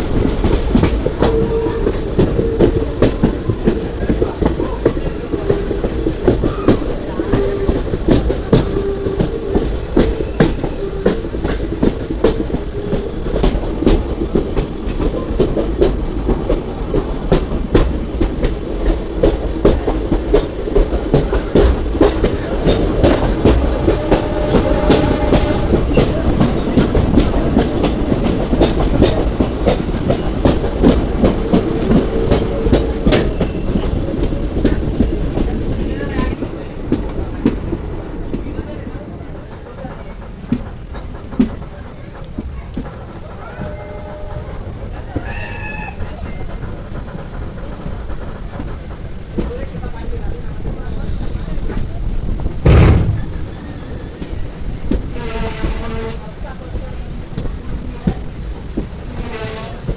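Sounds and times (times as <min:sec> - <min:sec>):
train rumbling on rails: 0:00.0 - 0:59.9
wheels clickety-clack over rail joints: 0:00.0 - 0:59.9.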